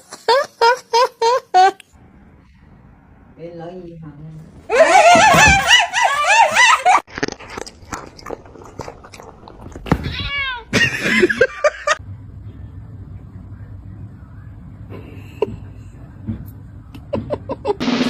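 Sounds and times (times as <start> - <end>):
cat yowling and meowing: 9.9 - 10.8.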